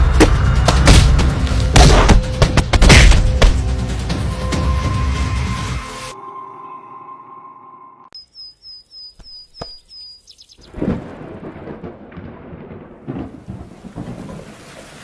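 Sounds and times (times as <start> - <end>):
bird chirping: 8.1 - 10.8
loud thunderclap: 10.7 - 14.9
steady rain: 10.8 - 15.0.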